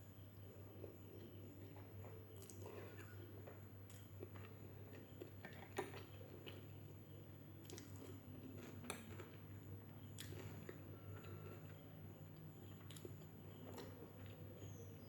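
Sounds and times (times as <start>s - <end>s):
low steady hum: 0.0s - 15.0s
chewing mouth sounds: 3.9s - 6.9s, 7.6s - 9.4s, 10.0s - 14.8s.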